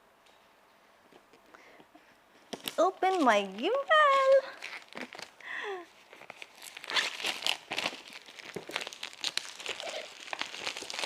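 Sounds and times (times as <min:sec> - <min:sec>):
packaging crinkling and rustling: 0:02.3 - 0:11.0.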